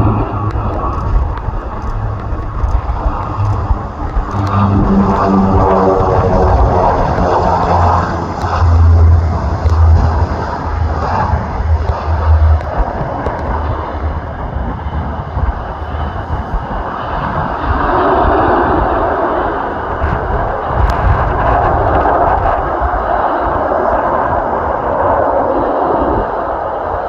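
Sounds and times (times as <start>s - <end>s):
cargo plane engine drone: 0.0s - 27.0s.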